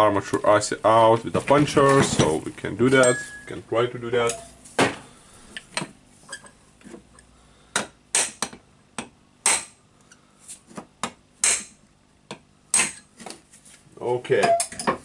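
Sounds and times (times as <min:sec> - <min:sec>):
hammer striking metal punch: 0:07.8 - 0:09.8, 0:11.0 - 0:11.8.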